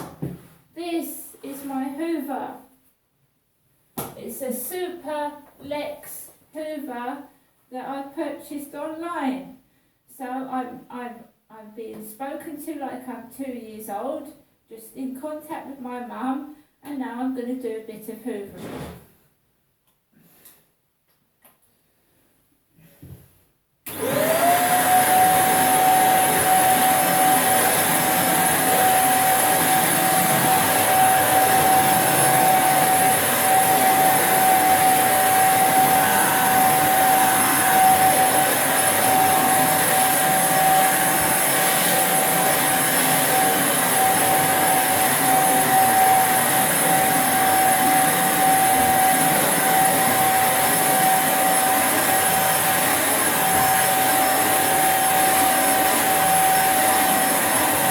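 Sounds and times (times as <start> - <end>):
vacuum cleaner running: 23.9 - 57.9.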